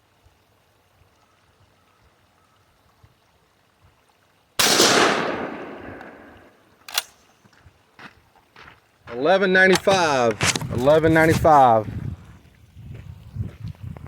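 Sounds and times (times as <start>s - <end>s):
shotgun blast: 4.6s - 6.6s.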